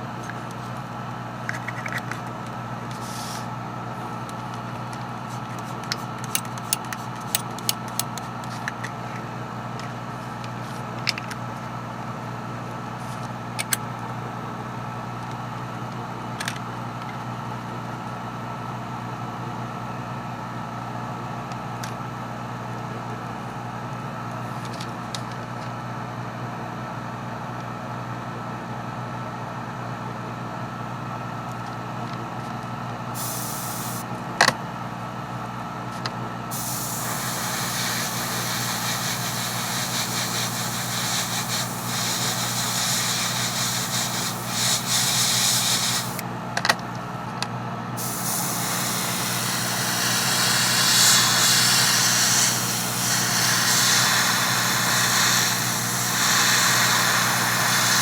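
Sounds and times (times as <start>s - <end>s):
airbrush air hiss: 3.0s - 3.5s, 33.2s - 34.0s, 36.5s - 46.2s, 48.0s - 58.0s
small electric motor humming: 33.2s - 34.0s, 36.5s - 46.2s, 48.0s - 58.0s.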